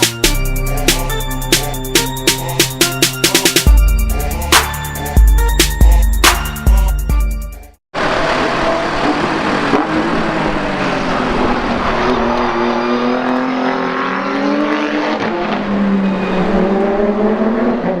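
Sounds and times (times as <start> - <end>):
race car engine running hard: 8.0 - 18.0.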